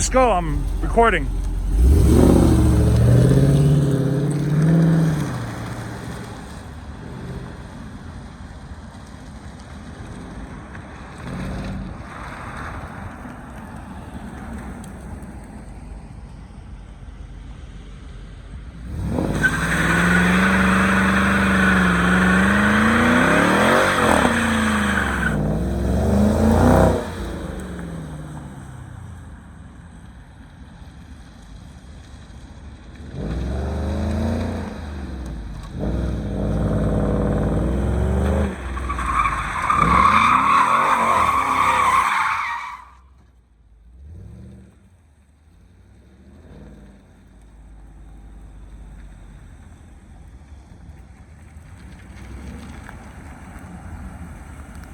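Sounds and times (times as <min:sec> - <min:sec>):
car engine revving: 0:00.0 - 0:07.8, 0:18.8 - 0:28.6, 0:33.1 - 0:42.6
tires squealing: 0:00.0 - 0:07.8, 0:18.7 - 0:28.7, 0:33.2 - 0:43.3.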